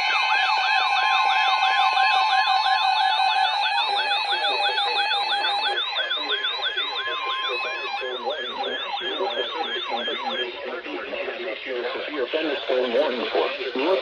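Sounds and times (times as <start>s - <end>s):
steady alarm tone: 0.0s - 10.6s
warbling siren alarms: 0.0s - 10.6s.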